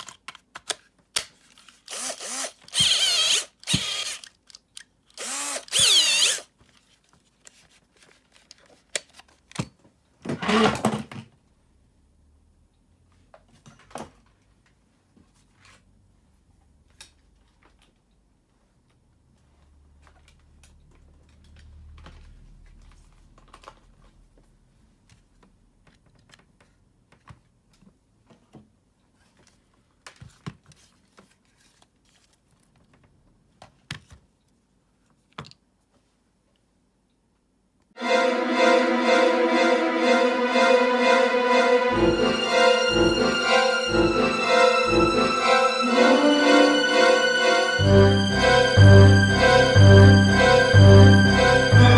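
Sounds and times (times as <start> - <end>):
music: 38.0 - 51.9.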